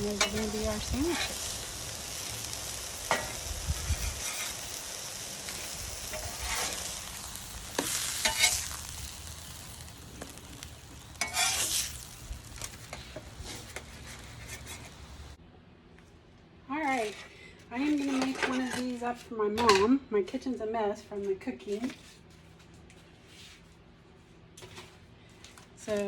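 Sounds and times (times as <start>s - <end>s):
food sizzling in oil: 0.0s - 15.4s
scrapes and clatters in pan: 8.2s - 8.7s, 11.2s - 11.9s.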